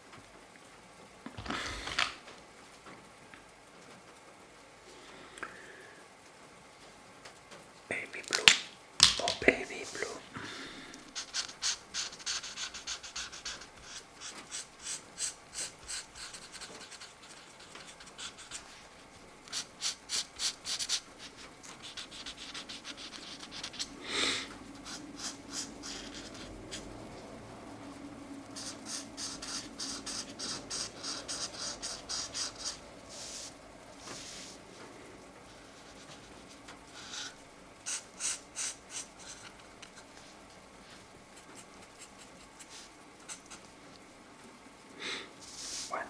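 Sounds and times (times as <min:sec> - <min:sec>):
markers scratching on paper: 0:10.9 - 0:34.8, 0:35.4 - 0:44.0, 0:45.4 - 0:46.0.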